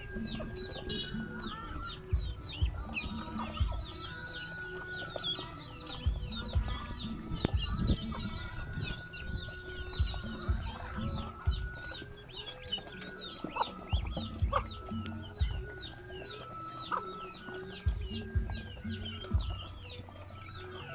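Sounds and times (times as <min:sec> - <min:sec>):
ducks peeping: 0:00.0 - 0:20.9
low thumps: 0:06.0 - 0:11.8.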